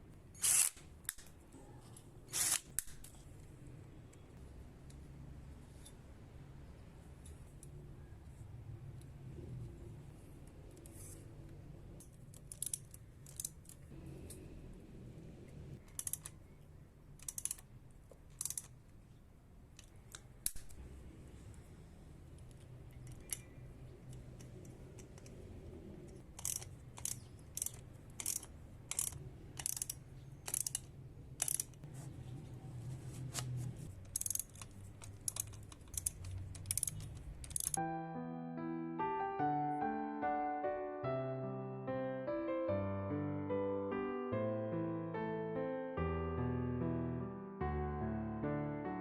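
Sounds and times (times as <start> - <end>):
tool clicks and snips: 0.4 - 1.4, 2.3 - 3.2, 26.1 - 31.9, 34.0 - 37.8
piano music: 37.8 - 49.0.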